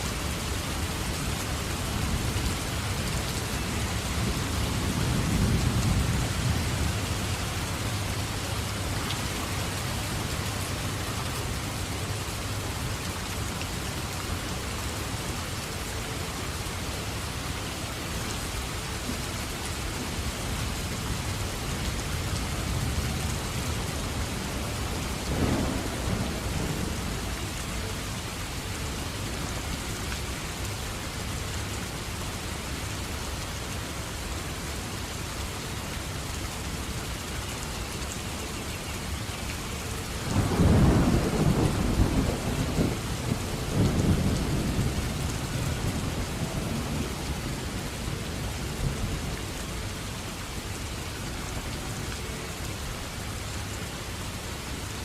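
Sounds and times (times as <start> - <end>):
steady rain: 0.0 - 55.0
thunder rumbling: 22.6 - 27.6, 40.2 - 47.7.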